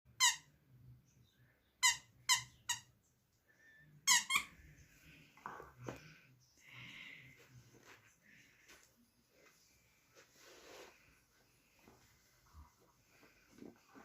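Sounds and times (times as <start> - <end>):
toy squeaker squeaking: 0.1 - 0.5, 1.8 - 2.9, 4.0 - 4.6.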